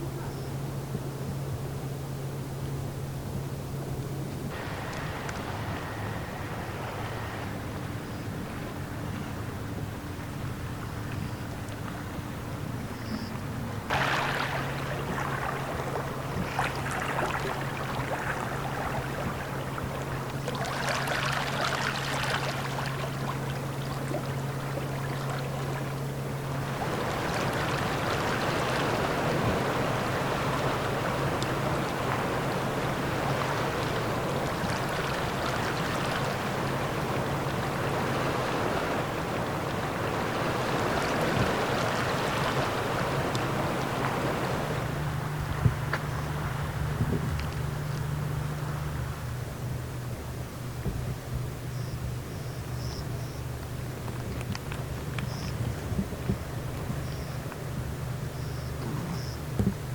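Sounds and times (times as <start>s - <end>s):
low hum: 0.0s - 59.9s
sea water washing and splashing: 4.5s - 12.9s, 13.5s - 49.3s.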